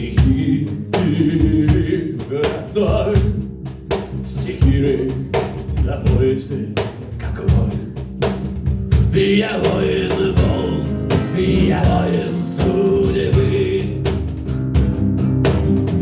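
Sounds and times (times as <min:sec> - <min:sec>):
drum kit beat: 0:00.0 - 0:16.0
low instrumental chords: 0:09.9 - 0:16.0.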